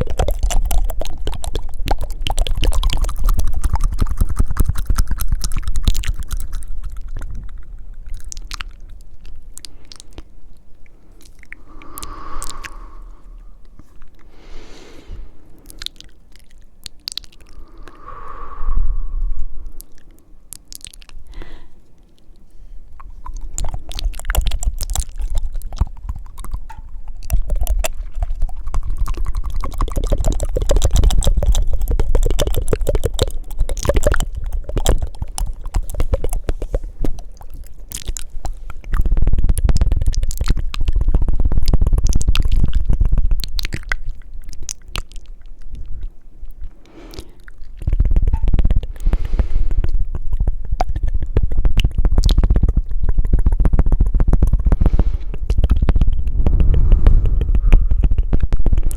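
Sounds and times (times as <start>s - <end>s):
wet tongue flutters and clicks: 0.0s - 58.9s
breaths rumbling on microphone: 7.2s - 41.4s, 45.4s - 58.9s.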